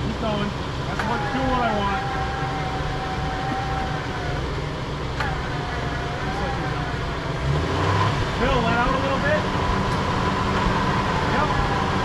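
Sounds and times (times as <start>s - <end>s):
engine idling rumble: 0.0s - 12.0s
electric winch motor whining: 0.8s - 8.0s, 10.6s - 12.0s.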